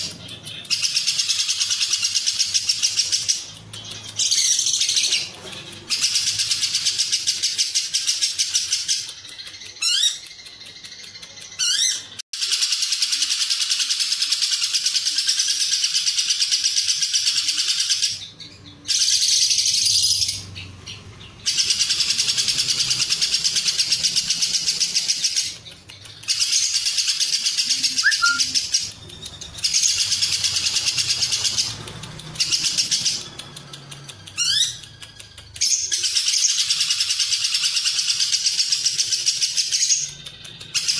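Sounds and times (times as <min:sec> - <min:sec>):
bird chattering trill: 0:00.0 - 0:40.9
bird rising whistled notes: 0:27.9 - 0:28.6.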